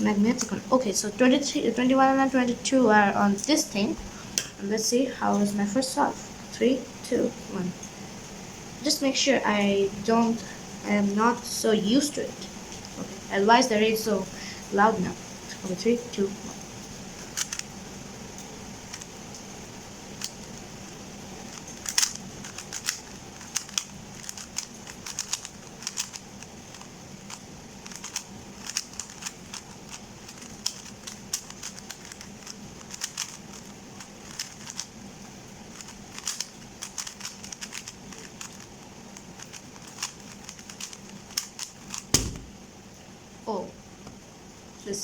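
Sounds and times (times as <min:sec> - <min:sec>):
faint steady hum: 0:00.0 - 0:45.0
puzzle cube plastic clicks: 0:16.5 - 0:42.6.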